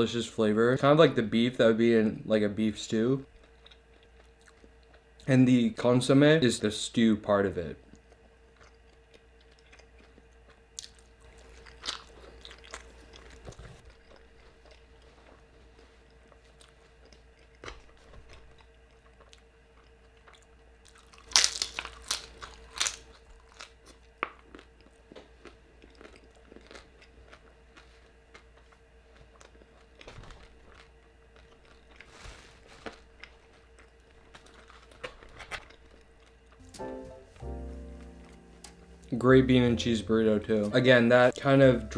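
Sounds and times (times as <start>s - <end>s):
chewing and biting food: 3.3s - 5.2s, 7.9s - 32.1s, 32.7s - 36.6s.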